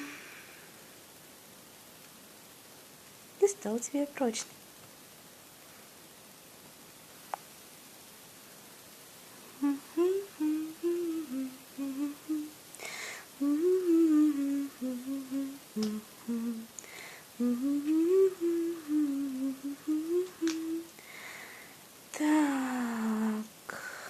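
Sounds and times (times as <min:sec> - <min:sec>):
woman humming: 0:00.0 - 0:00.5, 0:09.5 - 0:12.6, 0:13.2 - 0:21.0, 0:22.2 - 0:23.9
breath intakes: 0:12.8 - 0:13.3.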